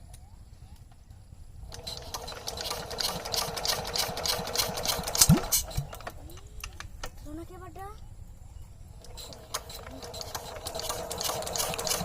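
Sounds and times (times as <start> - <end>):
sewing machine running: 1.7 - 5.8, 9.1 - 12.0.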